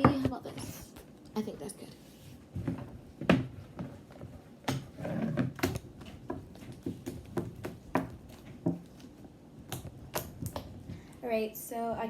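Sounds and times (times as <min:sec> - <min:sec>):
hard objects knocking on tabletop: 0:04.7 - 0:08.9.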